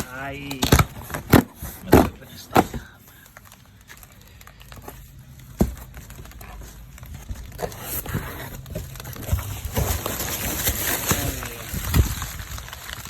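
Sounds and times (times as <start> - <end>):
packing material crinkling: 0.0 - 13.0
cardboard box being opened: 4.7 - 13.0.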